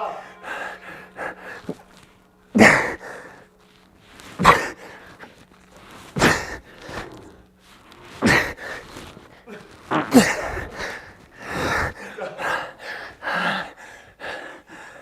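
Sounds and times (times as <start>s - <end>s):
man gasping for breath: 10.2s - 15.0s.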